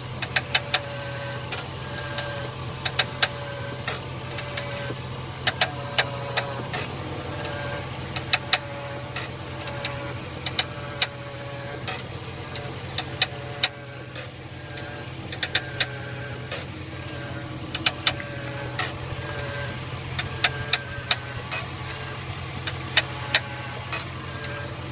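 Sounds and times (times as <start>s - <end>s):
car engine idling: 0.0s - 24.9s
suspension creaking and clicking: 0.0s - 24.9s.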